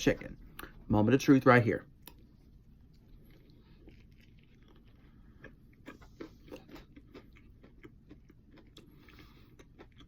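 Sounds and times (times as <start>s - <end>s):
faint chewing: 2.0s - 10.0s.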